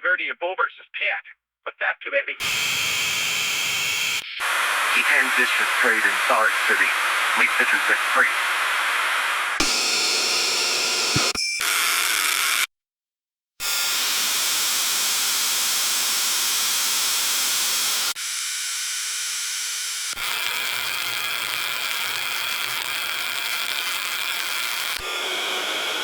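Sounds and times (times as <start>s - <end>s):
radio static hiss: 2.4s - 11.4s.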